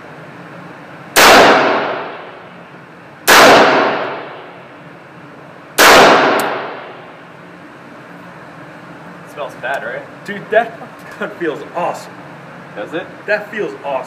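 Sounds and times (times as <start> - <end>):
rifle shots echoing: 1.2 - 2.4, 3.2 - 4.6, 5.8 - 7.0.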